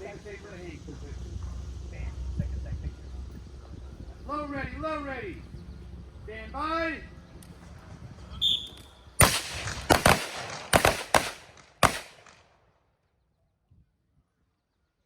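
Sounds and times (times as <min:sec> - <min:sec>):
whistle blast: 0:08.3 - 0:09.0
rifle shots: 0:09.2 - 0:12.6.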